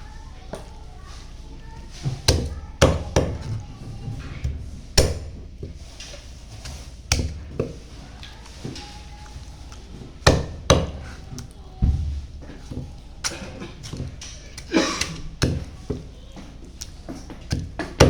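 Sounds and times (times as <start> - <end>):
cleaver chopping chicken: 2.0 - 3.7, 4.4 - 5.8, 6.6 - 7.8, 10.2 - 11.5, 12.6 - 16.1, 16.8 - 18.0.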